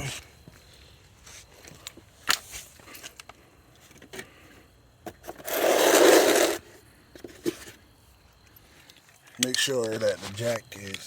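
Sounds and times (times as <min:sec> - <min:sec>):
hydraulic jack scraping: 0:05.3 - 0:06.7.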